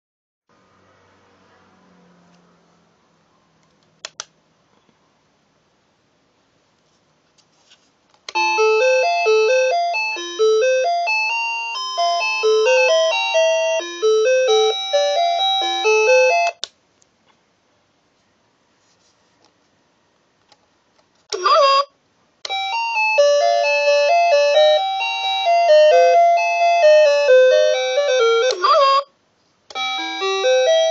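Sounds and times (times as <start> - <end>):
alarm clock chime melody: 8.3 - 16.6, 22.5 - 29.0, 29.7 - 30.9.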